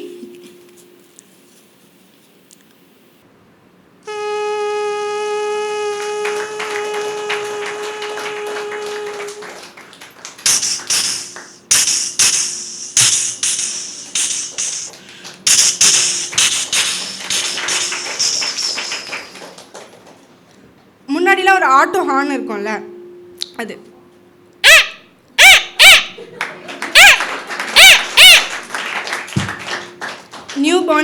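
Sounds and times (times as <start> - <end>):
mouth-made train whistle: 4.1 - 11.6, 24.6 - 26.1, 27.0 - 28.9.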